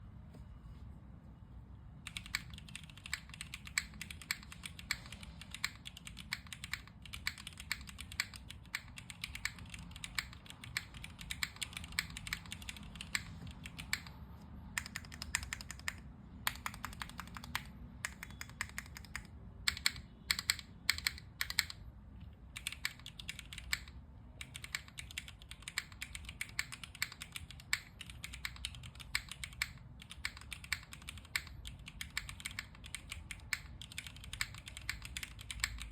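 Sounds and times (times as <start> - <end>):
mechanical keyboard typing: 2.0 - 35.9.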